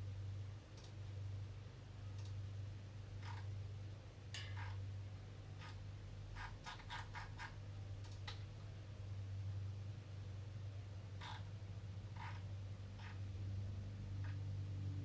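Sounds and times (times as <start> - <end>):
steady low hum: 0.0 - 15.0
light clicks and scratches: 3.2 - 3.5, 4.3 - 4.8, 5.6 - 8.4, 12.1 - 13.3.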